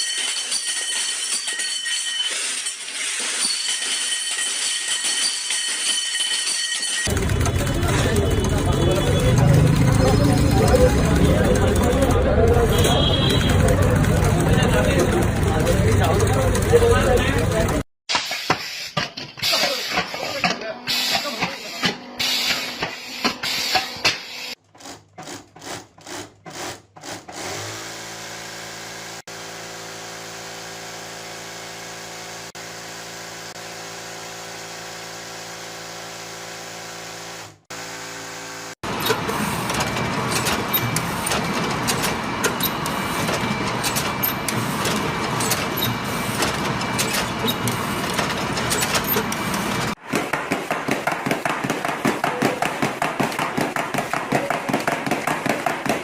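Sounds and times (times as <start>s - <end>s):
machine clattering with ticks: 2.3s - 17.8s, 38.8s - 56.0s
steady motor hum: 7.1s - 17.8s
machinery sharp knocks: 50.1s - 56.0s.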